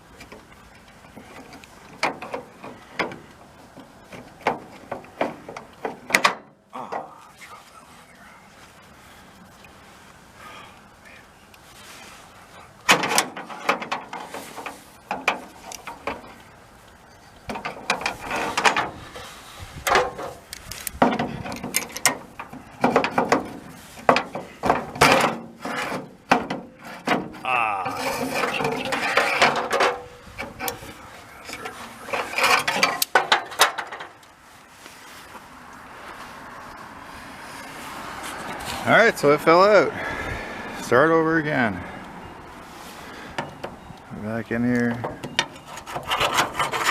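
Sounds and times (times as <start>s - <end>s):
metal door latch clicking and scraping: 0.2s - 6.6s, 12.9s - 16.4s, 17.5s - 27.4s, 28.0s - 34.2s, 44.9s - 46.9s.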